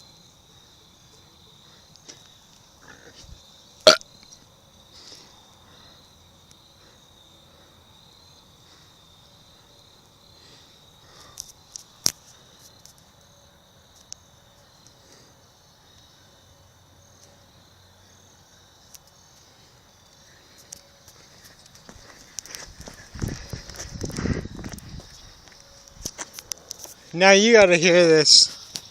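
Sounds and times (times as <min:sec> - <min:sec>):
high-pitched insect chirring: 0:01.9 - 0:04.4.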